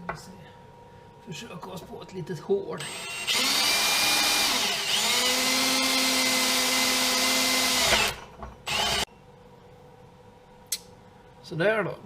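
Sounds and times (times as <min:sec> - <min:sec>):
electric drill whining: 0:02.8 - 0:09.1.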